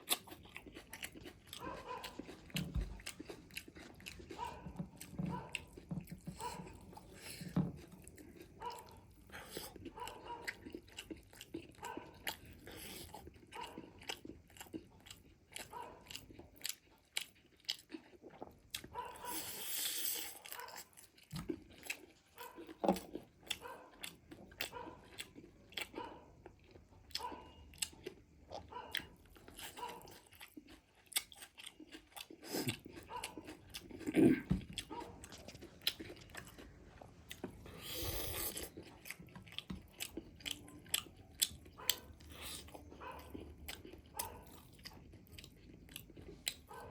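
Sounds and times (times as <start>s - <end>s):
chewing crispy fried chicken: 0.0s - 46.9s.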